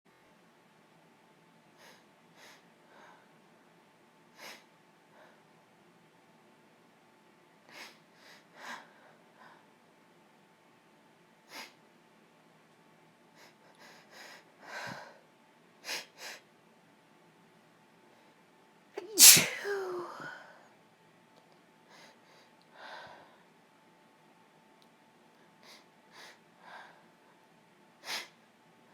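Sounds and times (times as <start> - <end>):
woman sneezing: 19.0 - 20.4
woman sniffing: 19.0 - 20.4.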